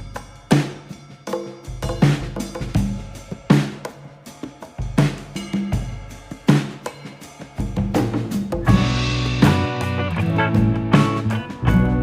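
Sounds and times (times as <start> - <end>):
steady drum beat: 0.0 - 12.0
pitched instruments: 8.6 - 12.0.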